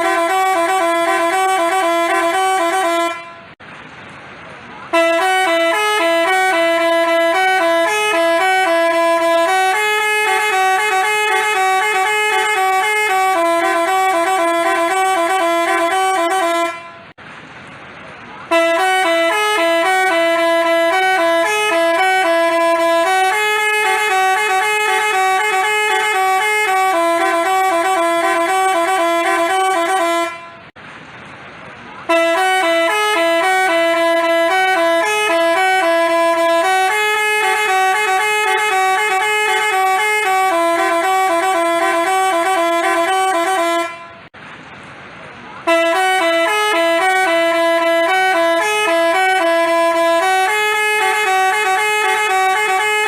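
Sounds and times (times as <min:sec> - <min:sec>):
multi-tone bus horn melody: 0:00.0 - 0:03.7, 0:04.7 - 0:17.2, 0:18.4 - 0:30.8, 0:32.0 - 0:44.4, 0:45.6 - 0:53.0.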